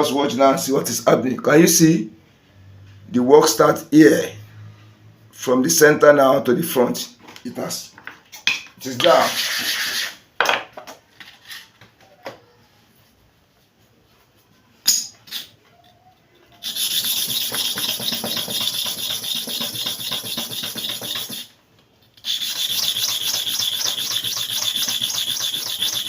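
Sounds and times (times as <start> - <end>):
blade scraping on sharpening surface: 16.5 - 21.5, 22.2 - 26.0.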